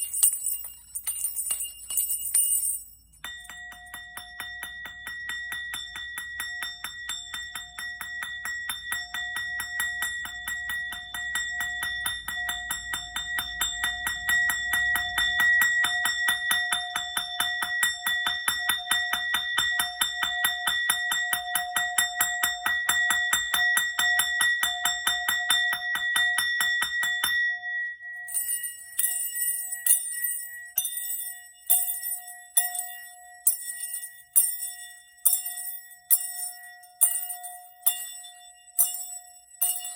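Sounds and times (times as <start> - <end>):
bright tinkling jingles: 0.0 - 3.9, 28.2 - 39.9
hand bell ringing: 0.0 - 6.7, 28.2 - 39.9.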